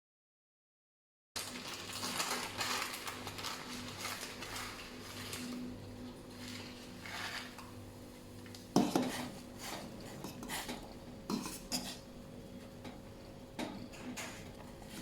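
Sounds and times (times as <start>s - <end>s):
dishes and utensils clattering: 8.8s - 12.0s.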